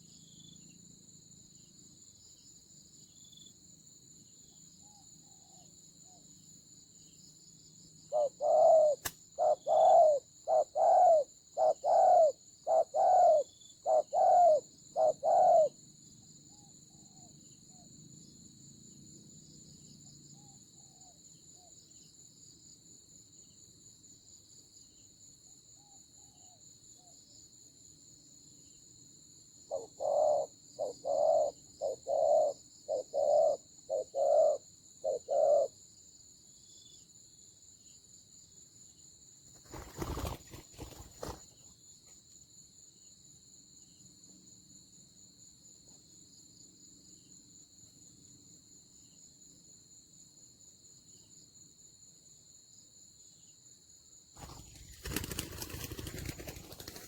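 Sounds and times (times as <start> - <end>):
insects droning: 0.0 - 57.0
doves cooing: 8.1 - 15.7, 29.7 - 35.7.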